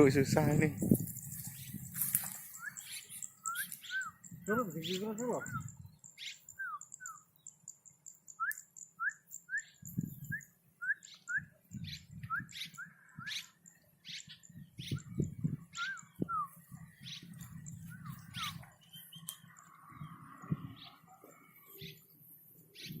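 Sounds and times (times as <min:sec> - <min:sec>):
high bird chirps: 0:00.9 - 0:23.0
bird whistling calls: 0:01.5 - 0:07.3, 0:08.3 - 0:19.4.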